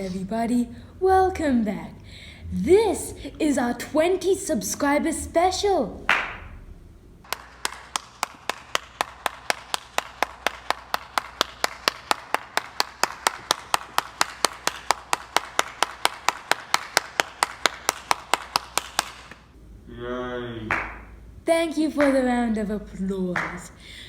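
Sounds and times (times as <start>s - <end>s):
person clapping: 6.1s - 6.5s, 7.3s - 19.5s, 20.7s - 21.2s, 22.0s - 22.4s, 23.4s - 24.0s.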